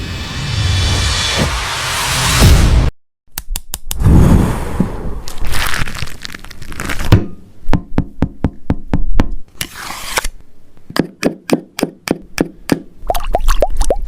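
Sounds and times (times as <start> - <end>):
short rushing noise: 0.0 - 2.9, 4.0 - 5.4.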